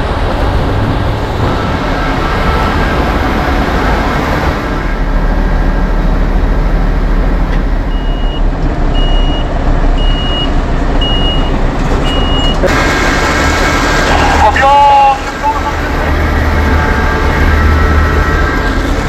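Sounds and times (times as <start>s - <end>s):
truck engine running: 0.0s - 19.0s
reversing alarm beeps: 7.9s - 8.4s, 9.0s - 12.6s.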